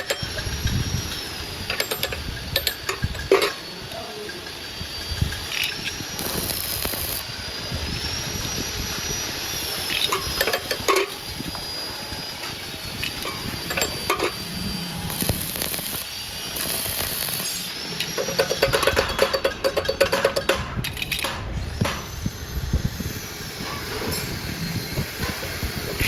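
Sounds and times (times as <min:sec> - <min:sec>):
hand tools clinking on metal blades: 0:00.0 - 0:06.5, 0:13.0 - 0:14.4, 0:18.0 - 0:21.4.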